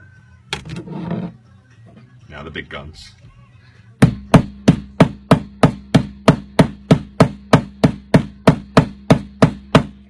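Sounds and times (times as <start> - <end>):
hard strikes on glass screen protector: 4.0 - 10.0.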